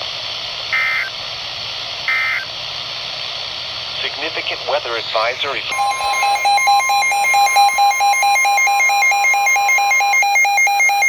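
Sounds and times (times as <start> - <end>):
fast two-pitch electronic beeping: 5.7 - 11.0
steady high alarm tone: 5.7 - 11.0.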